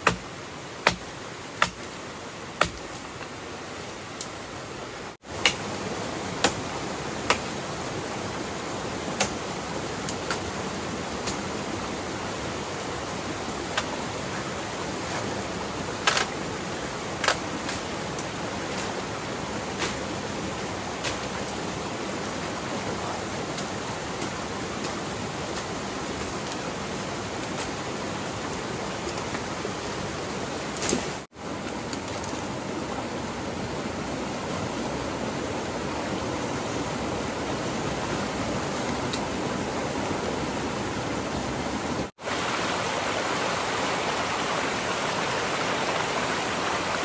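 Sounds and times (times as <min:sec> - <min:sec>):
rushing flowing water: 0:00.0 - 0:47.0.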